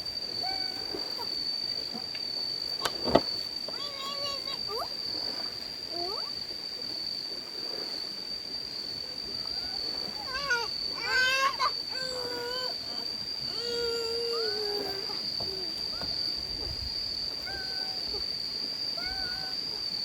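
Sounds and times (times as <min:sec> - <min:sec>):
insects droning: 0:00.0 - 0:20.0
children calling out: 0:09.5 - 0:16.1.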